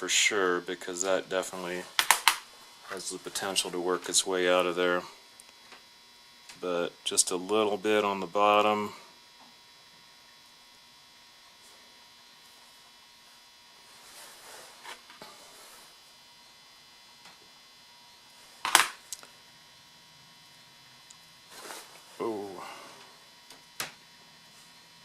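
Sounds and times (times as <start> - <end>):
low mains hum: 0.0 - 25.0
handling rustles: 21.5 - 22.3.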